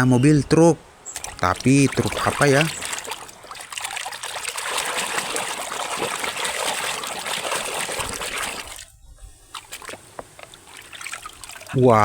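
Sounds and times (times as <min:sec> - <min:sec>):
water pouring and splashing: 0:00.9 - 0:12.0.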